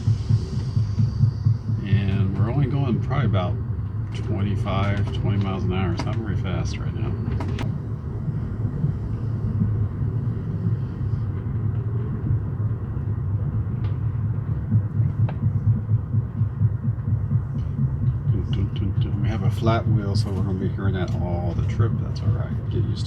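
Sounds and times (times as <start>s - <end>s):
repeating wheel thump: 0.0s - 6.4s, 13.7s - 22.8s
train wheels rumbling on rails: 0.0s - 23.0s.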